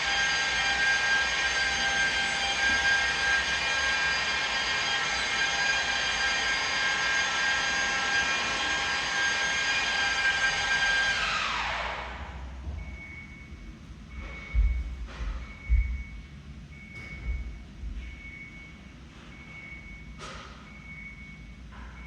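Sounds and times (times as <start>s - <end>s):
electric polisher motor whining: 0.0s - 12.4s.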